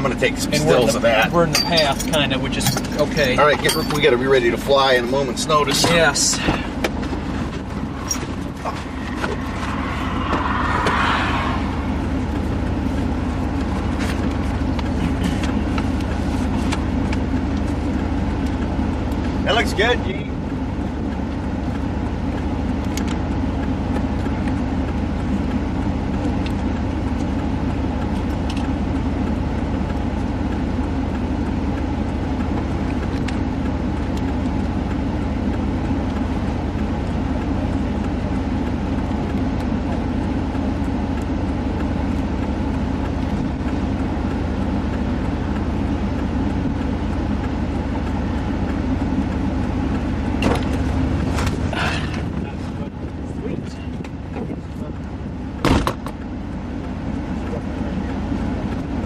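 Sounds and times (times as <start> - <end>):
vehicle engine idling: 0.0 - 59.0.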